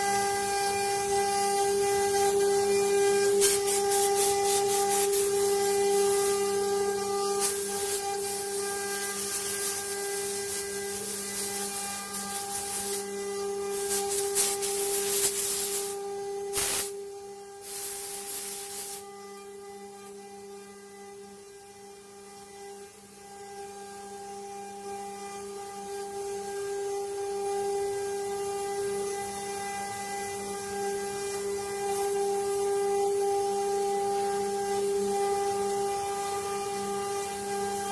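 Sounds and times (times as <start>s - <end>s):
router bit cutting wood: 0.0s - 16.5s
router spindle whine: 0.0s - 37.9s.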